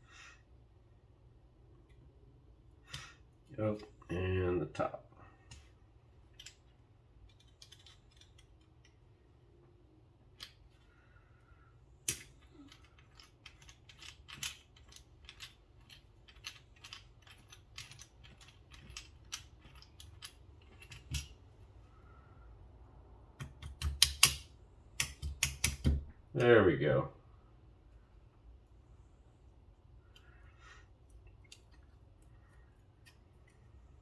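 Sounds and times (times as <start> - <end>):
metallic clicks of knife parts: 7.2 - 9.0, 12.0 - 21.3.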